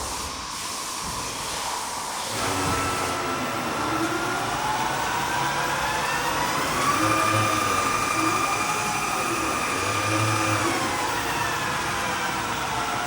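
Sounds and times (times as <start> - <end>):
milling machine motor whine: 2.3 - 13.0.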